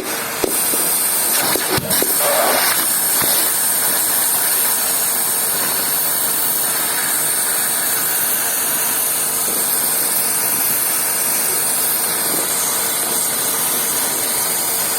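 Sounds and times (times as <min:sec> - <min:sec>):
vacuum cleaner running: 0:00.0 - 0:12.6.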